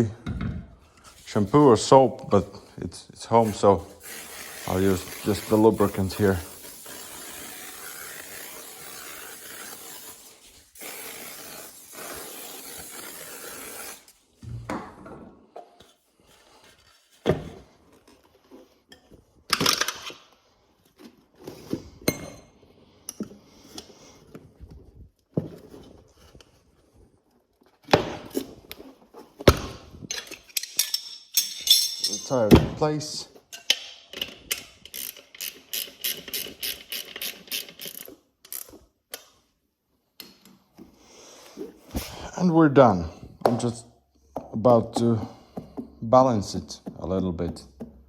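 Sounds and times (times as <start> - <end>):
aerosol spray hissing: 3.9 - 14.1.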